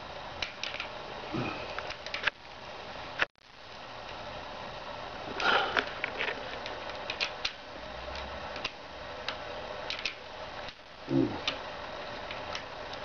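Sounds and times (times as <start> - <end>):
bicycle parts clicking and knocking: 0.4 - 0.9, 1.8 - 2.4, 5.4 - 10.8.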